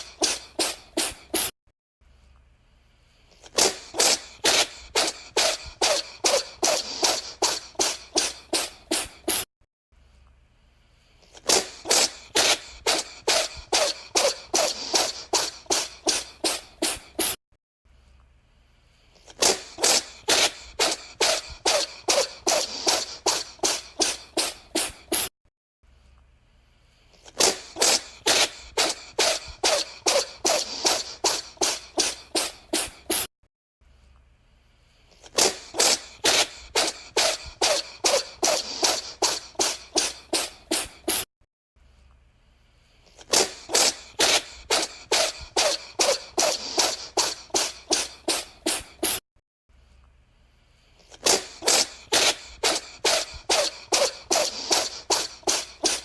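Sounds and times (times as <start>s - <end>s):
cat sneezing: 0.0s - 1.5s, 3.4s - 9.5s, 11.3s - 17.4s, 19.2s - 25.3s, 27.2s - 33.3s, 35.2s - 41.3s, 43.1s - 49.2s, 51.0s - 56.0s.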